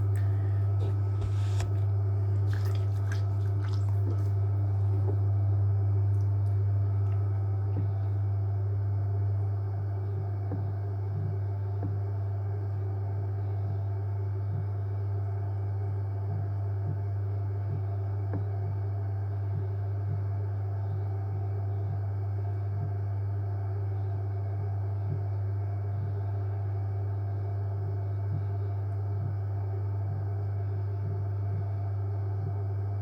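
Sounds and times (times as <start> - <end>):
pottery wheel motor hum: 0.0 - 33.0.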